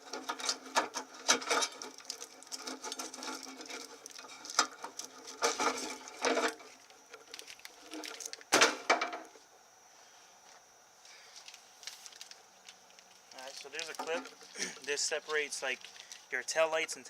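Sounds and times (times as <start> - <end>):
wires and plastic clips rattling: 11.4 - 16.3.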